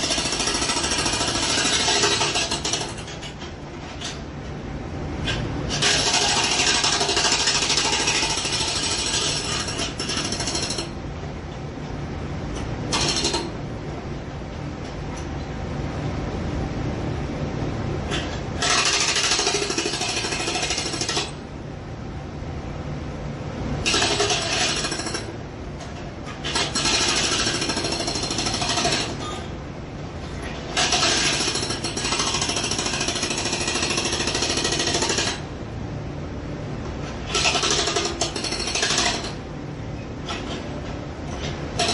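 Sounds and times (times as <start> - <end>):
jackhammer breaking material: 0.0 - 3.2, 5.7 - 10.9, 30.8 - 35.4.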